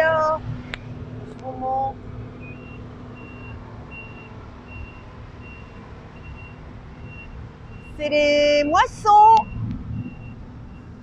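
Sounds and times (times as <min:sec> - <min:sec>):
reversing alarm beeps: 0:02.4 - 0:08.0, 0:09.4 - 0:11.0.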